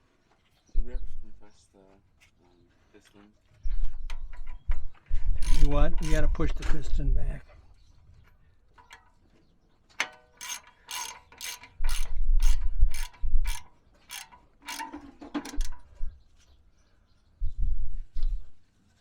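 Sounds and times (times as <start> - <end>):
ratchet wrench clicking: 5.3 - 6.8, 10.0 - 15.9
dull low thumps: 17.4 - 18.6.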